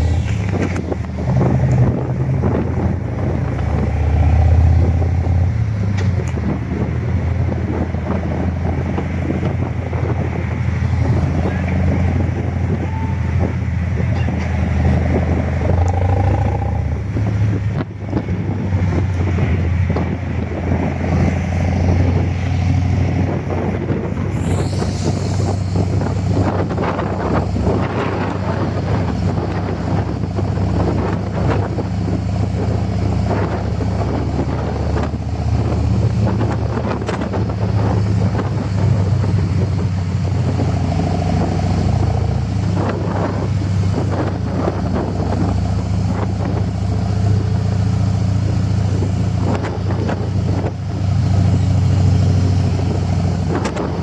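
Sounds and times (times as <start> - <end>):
wind buffeting microphone: 0.0 - 54.0
motorcycle engine running: 14.8 - 18.0.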